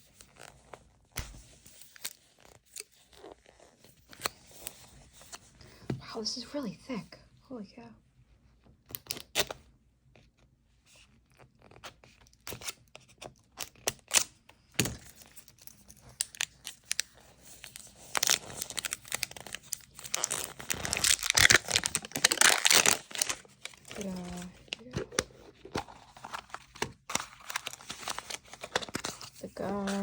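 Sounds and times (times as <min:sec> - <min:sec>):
plastic packaging tearing and crinkling: 0:11.6 - 0:30.0.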